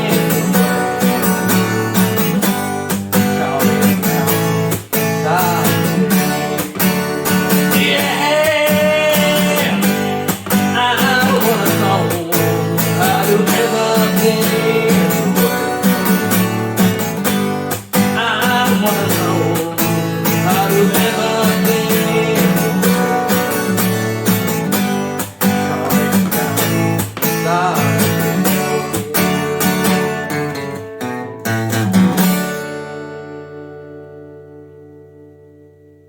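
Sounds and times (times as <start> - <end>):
person singing: 0.0 - 1.9, 3.2 - 16.8, 17.8 - 24.0, 25.4 - 30.4
acoustic guitar strumming: 0.0 - 36.0.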